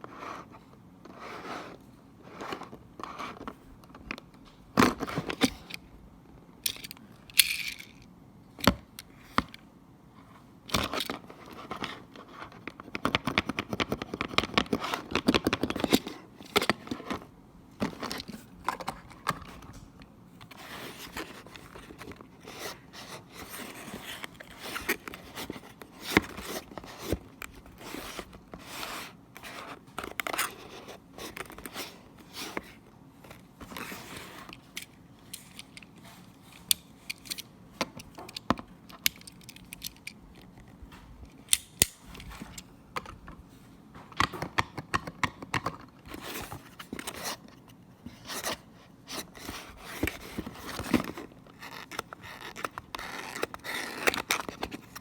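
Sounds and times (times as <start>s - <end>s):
packaging scraping and tearing: 48.2s - 55.0s.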